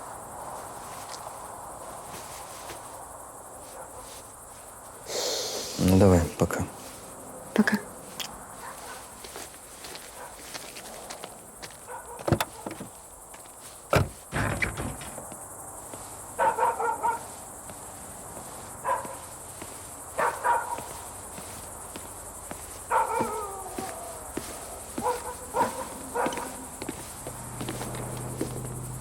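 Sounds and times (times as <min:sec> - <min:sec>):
dog barking: 0:03.6 - 0:04.2, 0:08.6 - 0:09.2, 0:10.1 - 0:10.5, 0:11.8 - 0:12.7, 0:16.4 - 0:17.4, 0:18.8 - 0:19.3, 0:20.2 - 0:21.0, 0:22.9 - 0:26.6
sharp knocks: 0:13.9 - 0:15.4.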